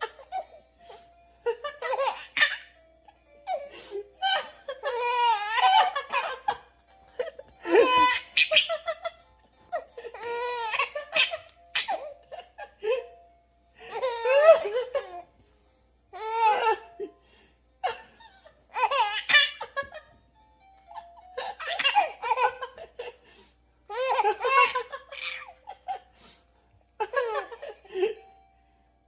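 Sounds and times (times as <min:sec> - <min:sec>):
baby laughing and squealing: 0:01.8 - 0:02.7, 0:04.3 - 0:06.4, 0:07.6 - 0:08.9, 0:10.2 - 0:12.2, 0:18.2 - 0:19.7, 0:21.6 - 0:22.6, 0:23.9 - 0:25.6.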